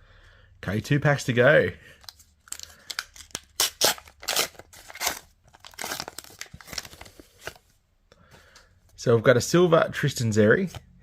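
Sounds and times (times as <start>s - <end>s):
wrapper tearing and crinkling: 2.0s - 7.6s.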